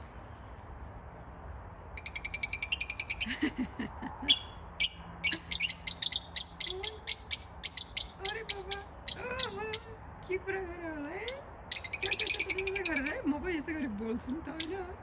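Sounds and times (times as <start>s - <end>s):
budgerigars chirping: 2.0s - 3.3s, 4.3s - 10.0s, 11.3s - 13.2s, 14.5s - 14.9s.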